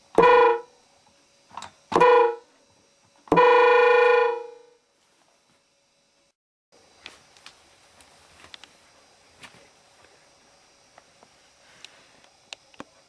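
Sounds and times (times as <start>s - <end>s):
electronic train horn blasts: 0.1s - 0.8s, 1.9s - 2.6s, 3.3s - 4.8s.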